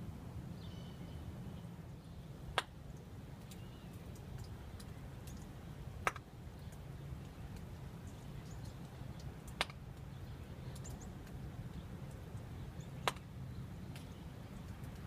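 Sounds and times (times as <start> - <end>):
low outdoor rumble: 0.0 - 15.0
faint high ticks: 2.6 - 5.5.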